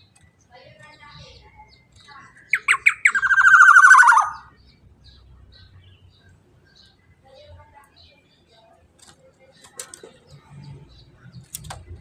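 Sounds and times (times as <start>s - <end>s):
oriole calling: 2.5s - 4.5s.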